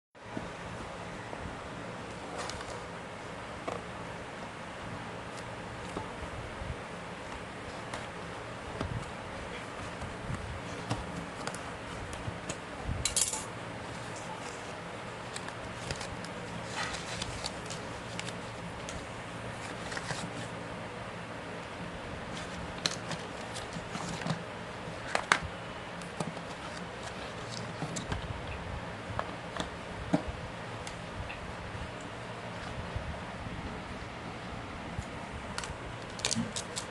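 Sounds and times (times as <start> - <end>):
steady low hum: 0.2 - 36.9
packaging clicks and rustles: 15.2 - 20.5, 22.3 - 25.4, 26.0 - 28.3, 35.6 - 36.9.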